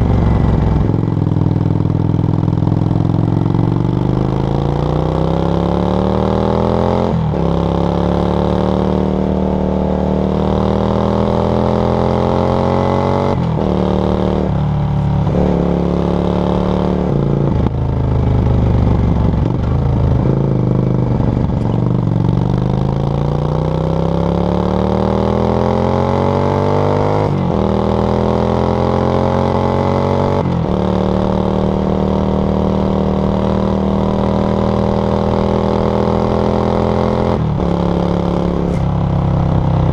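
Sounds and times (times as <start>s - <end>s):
motorcycle engine revving through gears: 0.0s - 39.9s.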